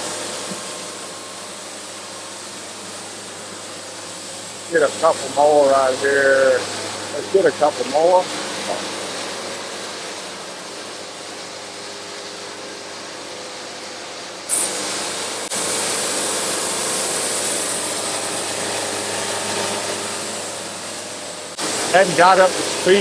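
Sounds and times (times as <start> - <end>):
band sawmill sawing a log: 4.7 - 9.6, 21.6 - 23.0.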